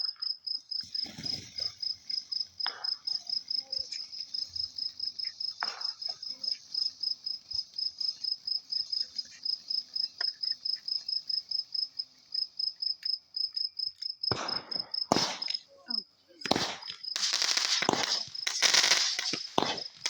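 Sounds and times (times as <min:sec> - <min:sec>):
crickets chirping: 0:00.0 - 0:20.0
firework bang: 0:14.3 - 0:15.6, 0:16.4 - 0:20.0.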